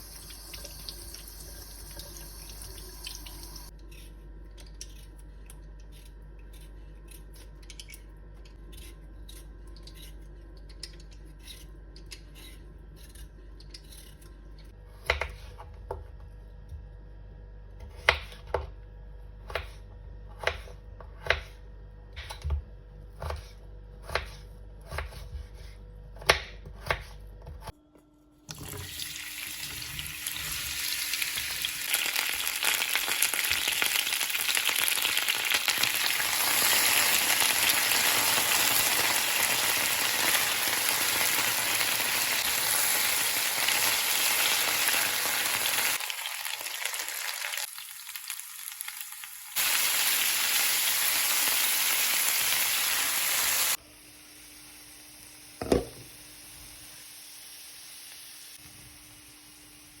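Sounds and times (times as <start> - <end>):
knife cutting vegetables on board: 23.1 - 27.7
potatoes sizzling in oil: 28.6 - 60.0.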